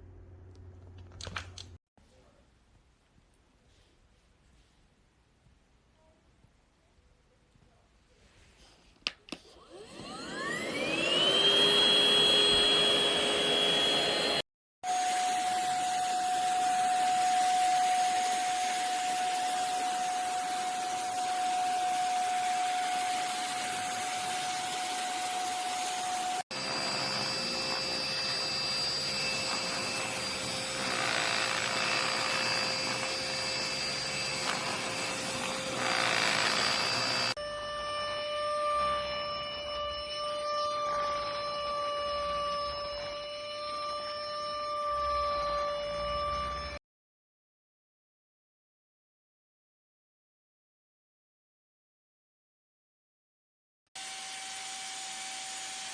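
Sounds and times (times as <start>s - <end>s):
vacuum cleaner motor whining: 9.4s - 46.8s.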